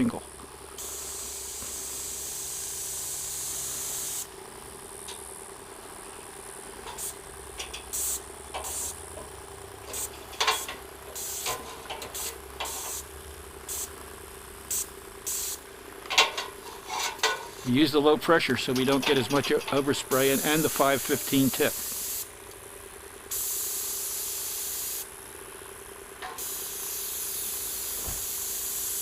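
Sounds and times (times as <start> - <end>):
paint sprayer hissing: 0.7 - 17.8, 19.0 - 22.4, 23.2 - 29.0
short spurts of spray: 0.8 - 4.3, 7.9 - 9.0, 26.4 - 29.0.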